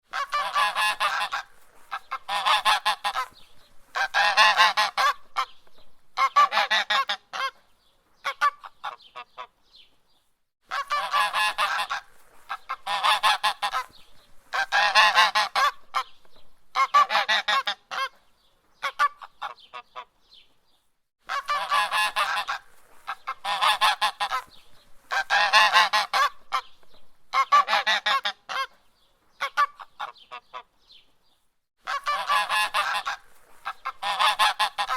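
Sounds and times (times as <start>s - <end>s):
goose honking: 0.1s - 5.5s, 6.2s - 7.6s, 10.7s - 16.1s, 16.7s - 18.1s, 21.3s - 26.7s, 27.3s - 28.7s, 31.8s - 34.9s.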